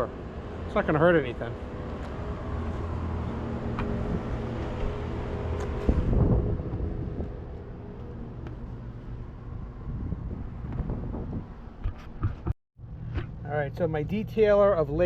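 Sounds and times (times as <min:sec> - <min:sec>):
vehicle engine running: 0:00.0 - 0:11.8.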